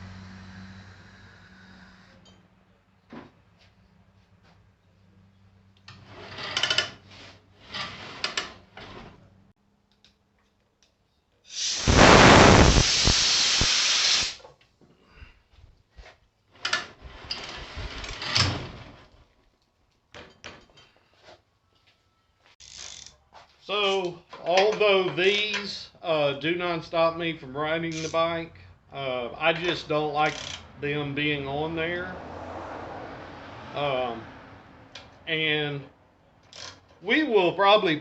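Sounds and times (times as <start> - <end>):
tools scraping and rattling on metal: 5.9 - 9.3, 20.1 - 21.2
loud hiss of air or spray: 11.5 - 14.4.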